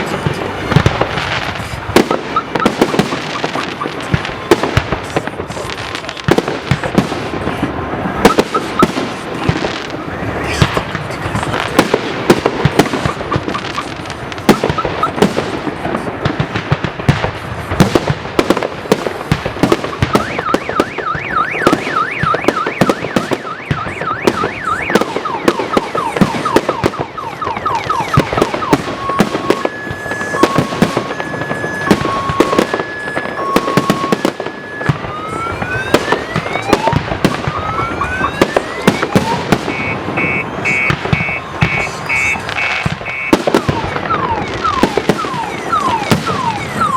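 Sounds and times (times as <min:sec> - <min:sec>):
fireworks bangs and cracks: 0:00.0 - 0:46.9
car alarm cycling tones: 0:02.0 - 0:04.1, 0:08.2 - 0:11.7, 0:12.4 - 0:15.2, 0:19.9 - 0:46.9.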